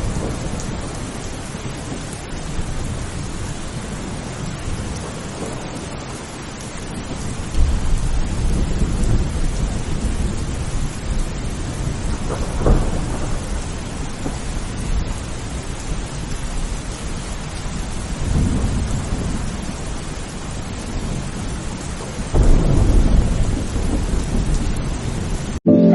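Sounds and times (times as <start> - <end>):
heavy rain: 0.0 - 25.9
thunder rumbling: 6.9 - 14.4, 22.2 - 25.5.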